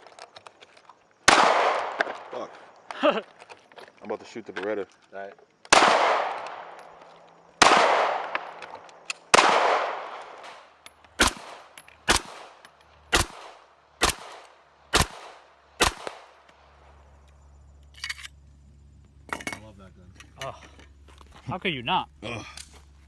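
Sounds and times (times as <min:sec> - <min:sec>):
pistol shots echoing: 0:01.3 - 0:02.3, 0:05.7 - 0:06.8, 0:07.6 - 0:16.4
sharp pistol shots: 0:01.3 - 0:02.3, 0:05.7 - 0:06.8, 0:07.6 - 0:08.6, 0:09.3 - 0:16.4.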